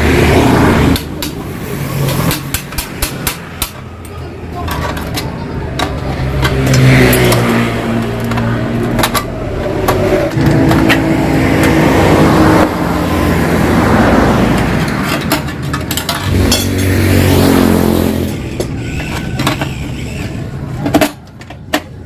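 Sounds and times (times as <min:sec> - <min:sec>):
motorcycle engine revving: 0:06.0 - 0:20.5.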